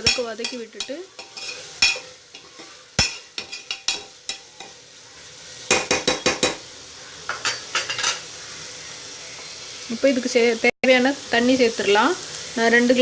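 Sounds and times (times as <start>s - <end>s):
spoon scraping and knocking pot: 0.0s - 4.8s
vegetables sizzling in oil: 0.0s - 13.0s.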